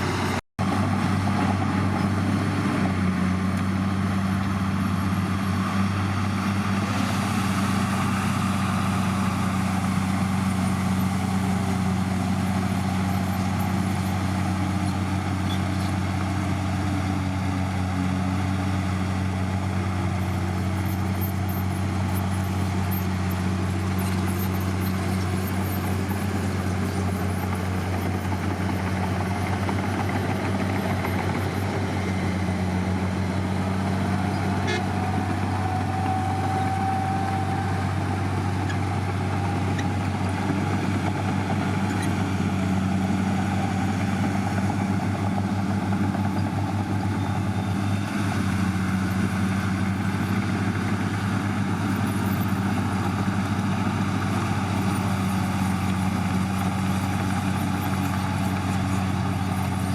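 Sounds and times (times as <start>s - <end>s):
diesel engine droning: 0.0s - 59.9s.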